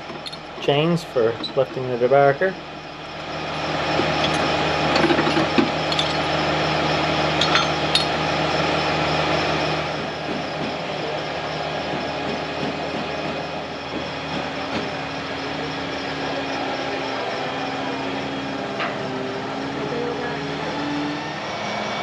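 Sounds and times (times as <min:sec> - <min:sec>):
crane engine running: 0:00.0 - 0:22.0
chains clanking against steel: 0:04.2 - 0:06.3, 0:07.4 - 0:08.2.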